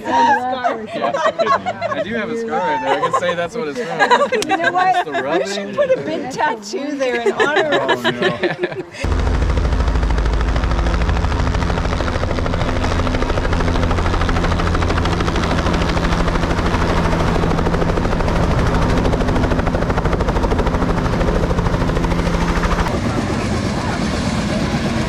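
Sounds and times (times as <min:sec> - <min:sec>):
helicopter rotor chop: 0:07.2 - 0:25.0
low engine drone: 0:09.0 - 0:25.0.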